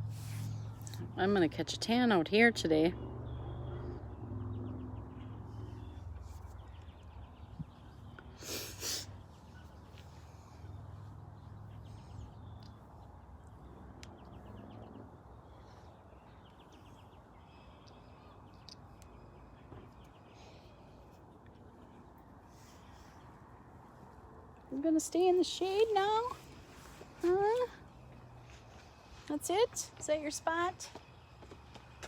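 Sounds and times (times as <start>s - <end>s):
short breathy burst: 8.4s - 9.2s.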